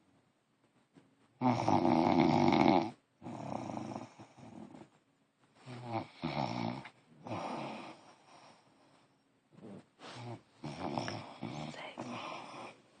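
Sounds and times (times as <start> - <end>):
man snoring: 1.4 - 4.8, 5.8 - 8.2, 10.2 - 12.7.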